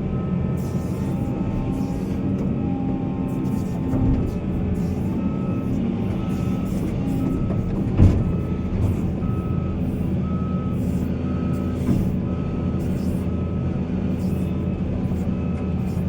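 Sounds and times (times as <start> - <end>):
diesel engine drone: 0.0 - 16.0
reversing alarm beeping: 0.1 - 16.0
thump: 7.9 - 8.4.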